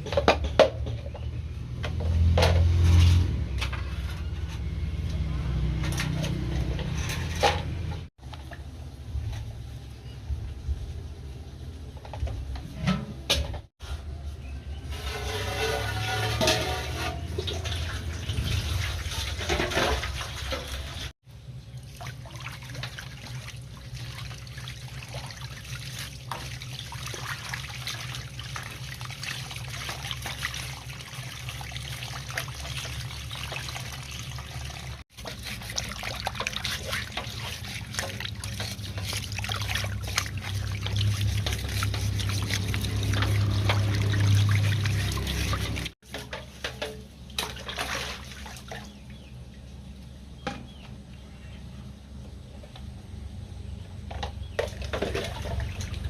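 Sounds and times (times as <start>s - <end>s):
scrubbing parts: 0.0s - 8.1s, 11.9s - 21.1s, 22.4s - 48.9s
water running and trickling: 15.3s - 21.1s, 21.7s - 46.0s.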